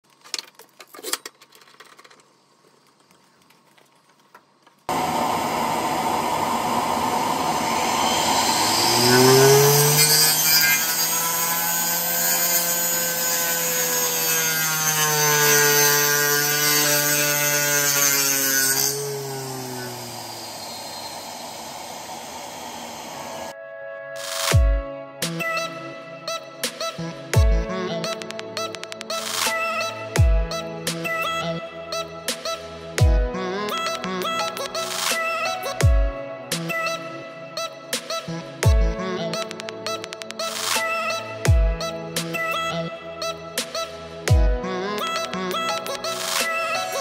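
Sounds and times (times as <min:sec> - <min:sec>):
circular saw cutting wood: 0:04.9 - 0:23.5.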